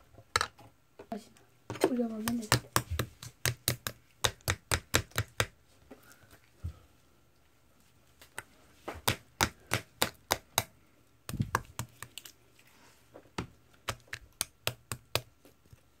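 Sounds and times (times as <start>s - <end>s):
slime squishing with clicks and pops: 2.3s - 5.6s, 8.2s - 12.4s, 13.8s - 15.3s.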